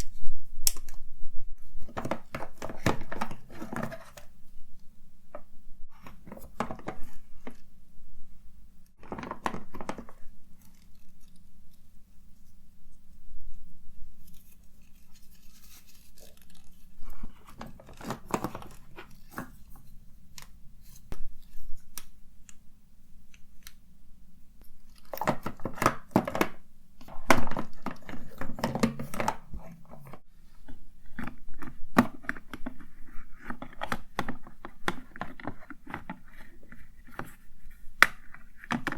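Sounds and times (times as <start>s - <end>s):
rustling: 9.0s - 22.1s.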